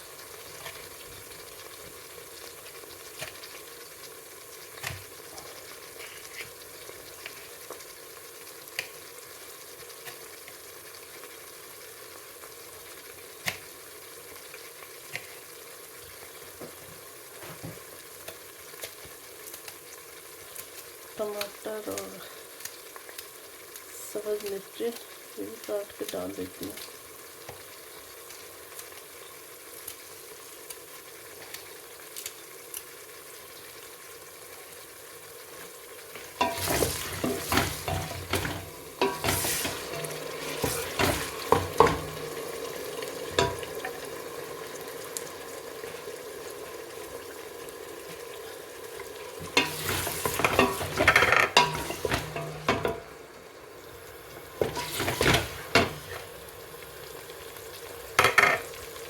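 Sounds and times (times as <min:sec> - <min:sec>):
onion masala sizzling in a pot: 0:00.0 - 0:59.0
spoon stirring and scraping a pot: 0:36.2 - 0:42.4, 0:43.3 - 0:44.0, 0:49.4 - 0:53.2, 0:54.4 - 0:56.4, 0:58.2 - 0:58.7.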